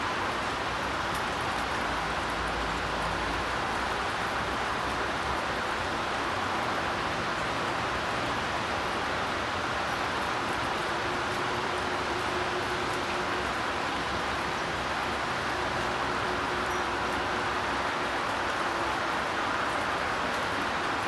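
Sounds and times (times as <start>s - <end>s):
steady rain falling: 0.0s - 21.0s
raindrop ticks: 0.2s - 5.5s, 9.9s - 17.4s.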